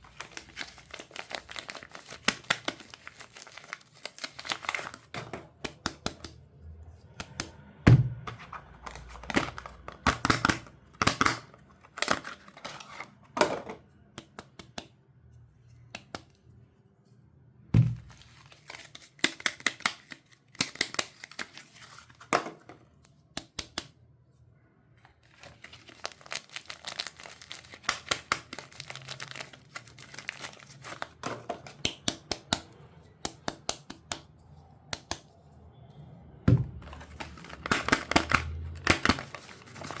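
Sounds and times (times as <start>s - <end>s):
wrapping crinkling and tearing: 0.0s - 5.1s, 18.0s - 22.2s, 25.2s - 31.2s, 36.8s - 40.0s.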